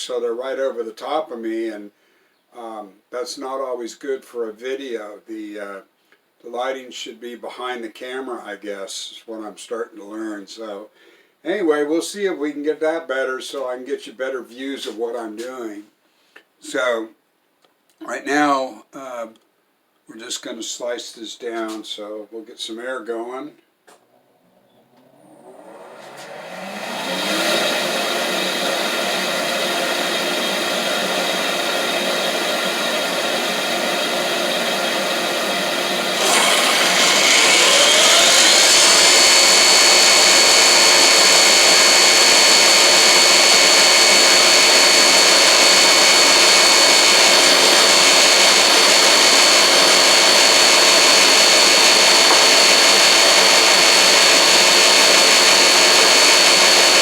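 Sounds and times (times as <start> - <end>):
saw motor whining: 24.4 - 57.0
dust collection vacuum rushing: 24.8 - 57.0.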